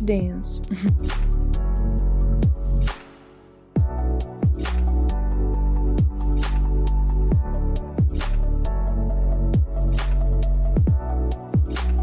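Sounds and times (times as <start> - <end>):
deep bass: 0.0 - 2.9, 3.8 - 12.0
electronic music: 0.0 - 12.0
kick drum with dropping pitch: 3.8 - 4.6, 6.0 - 6.2, 9.6 - 9.8, 10.8 - 11.7
higher percussion: 3.8 - 8.9.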